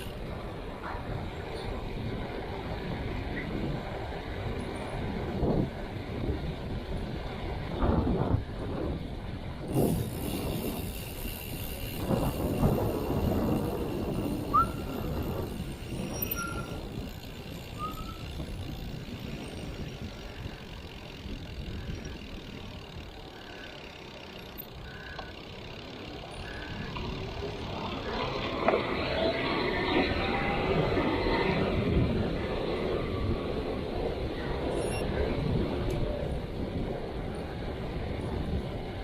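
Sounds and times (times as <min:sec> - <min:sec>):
rumble of passing vehicles: 0:00.0 - 0:39.0
faint short beeps: 0:34.7 - 0:35.1.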